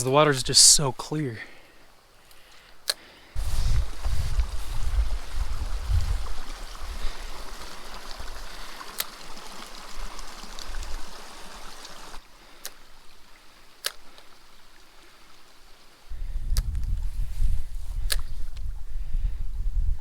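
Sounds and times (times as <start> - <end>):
mountain stream running: 0.0 - 18.6
sharp clicks: 2.3 - 3.1, 13.8 - 14.3, 18.0 - 18.7.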